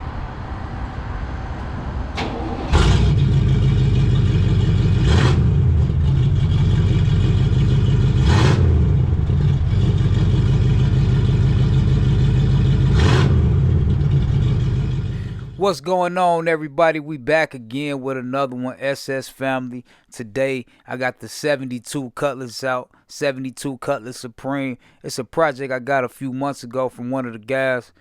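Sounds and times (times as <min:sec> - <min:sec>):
car engine starting and idling: 0:00.0 - 0:15.7.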